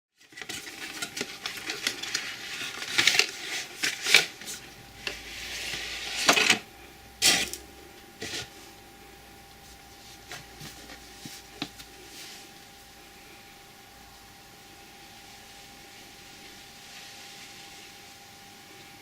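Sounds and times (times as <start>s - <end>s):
cardboard and wrapping rustling: 0.2s - 6.6s, 9.6s - 12.6s.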